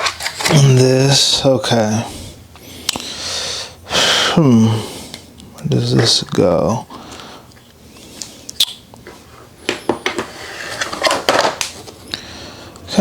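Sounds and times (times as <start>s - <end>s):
parts and packaging handled: 0.0s - 1.4s, 9.0s - 12.1s.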